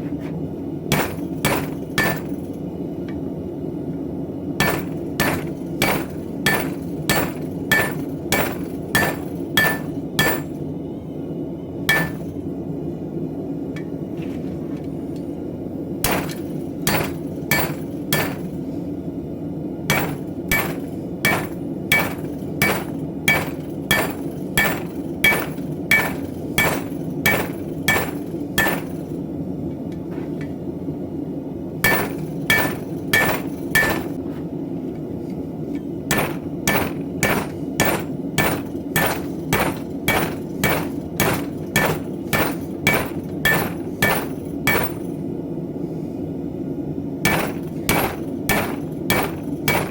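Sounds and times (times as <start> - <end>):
hammer striking steel on anvil: 0.9 - 2.4, 4.6 - 10.6, 11.9 - 12.4, 16.0 - 18.6, 19.9 - 29.1, 31.8 - 34.2, 36.1 - 45.2, 47.3 - 49.9.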